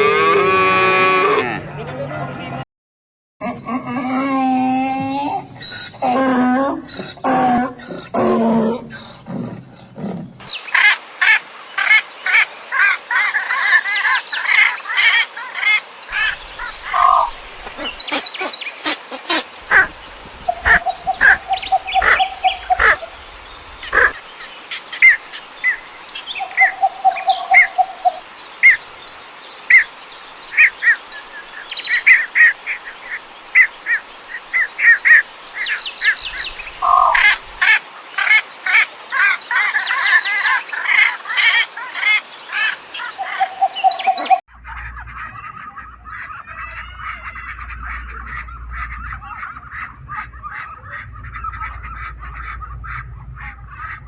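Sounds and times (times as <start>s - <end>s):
birds chirping and calling: 4.8s - 54.0s
low rumble: 19.6s - 24.0s, 44.5s - 54.0s.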